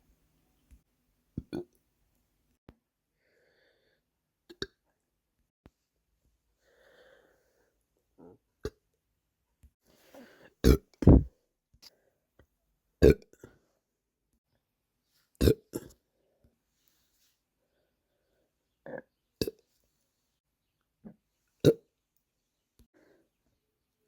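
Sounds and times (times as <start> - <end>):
soft breathing: 6.6 - 7.8, 9.8 - 11.3
person burping: 10.6 - 11.3, 13.0 - 13.4, 15.4 - 15.9, 18.8 - 19.6.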